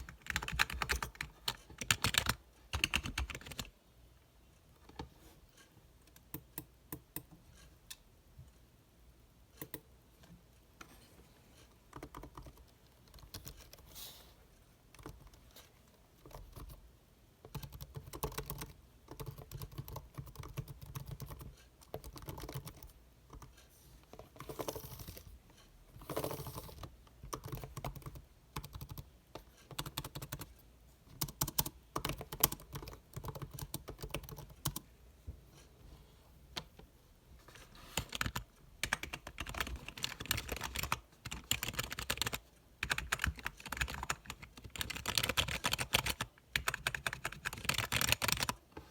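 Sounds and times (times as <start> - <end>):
keyboard keys clicking: 0.0 - 3.7, 31.2 - 34.8, 38.0 - 48.6.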